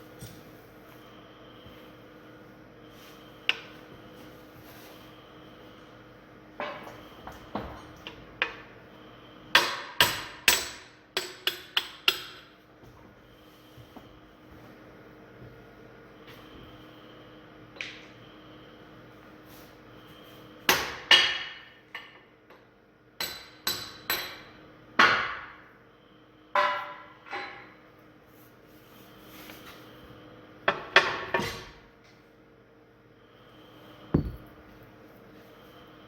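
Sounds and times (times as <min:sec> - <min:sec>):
dull thump: 0:34.2 - 0:34.5
hammer ringing on steel: 0:34.2 - 0:34.5.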